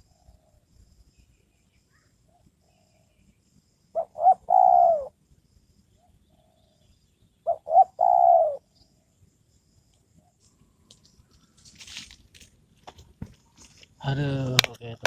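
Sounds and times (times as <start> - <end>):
dove cooing: 3.9 - 5.2, 6.0 - 9.1.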